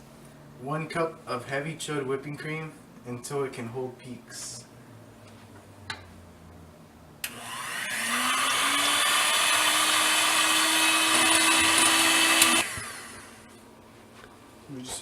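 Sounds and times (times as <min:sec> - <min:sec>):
electric mixer whining: 0:07.2 - 0:13.5.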